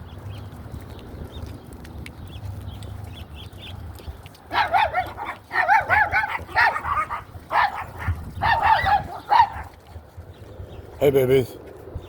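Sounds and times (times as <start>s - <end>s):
dogs barking and yipping: 0.4s - 10.6s.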